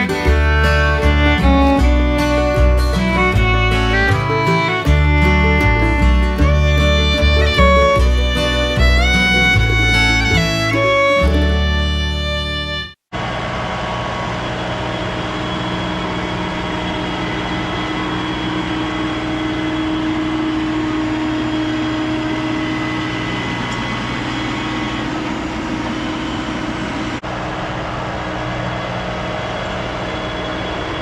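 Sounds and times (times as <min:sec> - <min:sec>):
fiddle music: 0:00.0 - 0:13.0
tractor engine running: 0:00.0 - 0:31.0.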